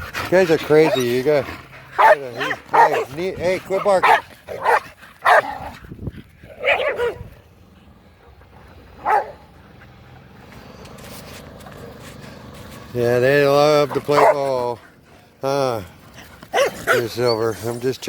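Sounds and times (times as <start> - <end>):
dog barking: 2.0 - 5.7, 6.6 - 7.3, 9.0 - 9.5, 14.0 - 14.4, 16.5 - 17.1.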